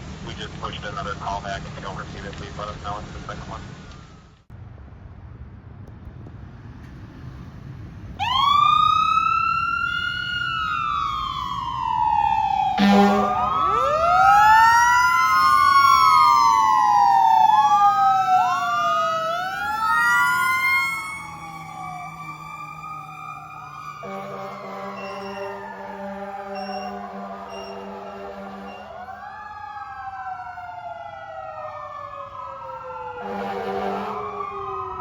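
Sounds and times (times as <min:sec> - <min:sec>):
fire engine siren wailing: 0:00.1 - 0:04.4, 0:08.1 - 0:35.0
air horn blast: 0:12.8 - 0:13.6, 0:24.0 - 0:29.1, 0:33.2 - 0:34.3.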